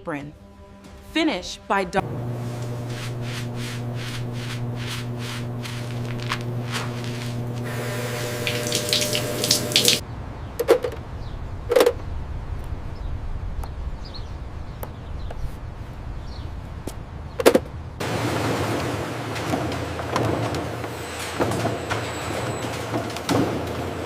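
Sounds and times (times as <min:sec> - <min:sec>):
low rumble: 0:02.0 - 0:08.0
mechanical hum with hiss: 0:02.0 - 0:10.0.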